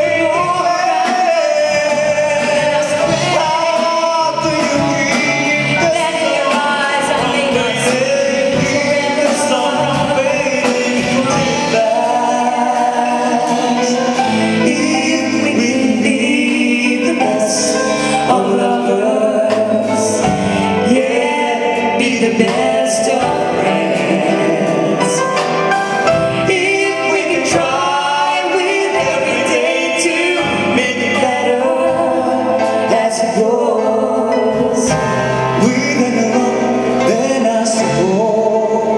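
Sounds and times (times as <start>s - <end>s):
drum and cymbal hits: 0.0s - 38.9s
live band playing: 0.0s - 38.9s
person singing: 0.0s - 38.9s.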